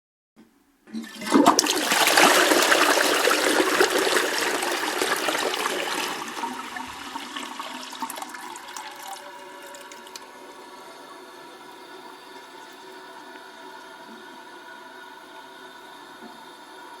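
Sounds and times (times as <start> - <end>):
toilet flush click: 0.9 - 16.9
toilet flushing water rush: 0.9 - 17.0.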